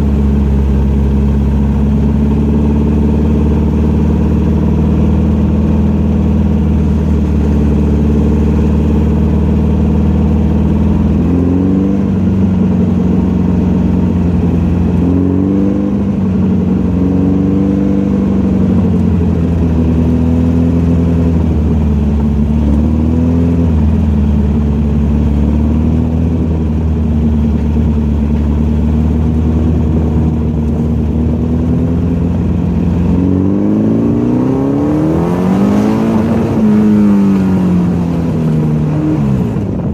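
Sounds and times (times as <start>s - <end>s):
car engine revving under load: 0.0s - 39.9s.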